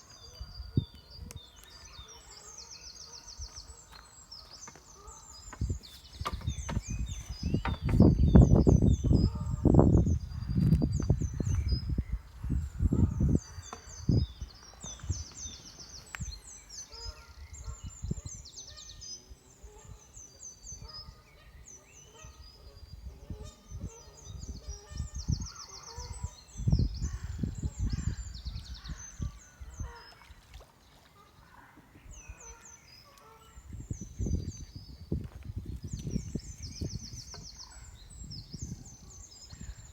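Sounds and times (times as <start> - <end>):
wind buffeting microphone: 0.0 - 2.1, 5.0 - 19.0, 20.6 - 30.5, 33.5 - 39.9
birds chirping and trilling: 0.0 - 39.9.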